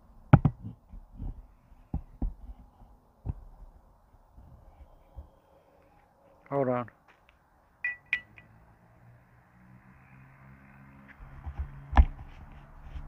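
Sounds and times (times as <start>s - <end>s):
handling noise on microphone: 11.1s - 13.0s.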